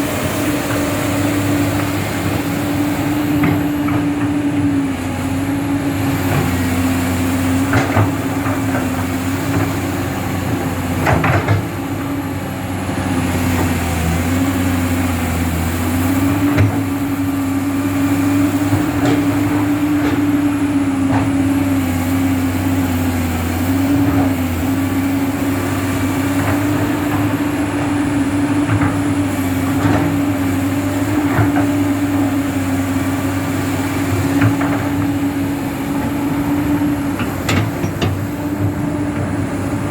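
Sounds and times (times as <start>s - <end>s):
excavator engine humming: 0.0s - 39.9s
short knocks and clanks: 37.1s - 39.4s.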